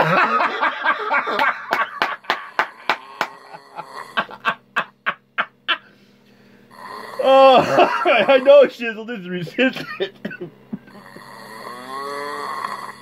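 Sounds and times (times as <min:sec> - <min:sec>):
man snoring with sputtering pops: 0:02.1 - 0:04.4, 0:06.7 - 0:08.6, 0:10.8 - 0:13.0.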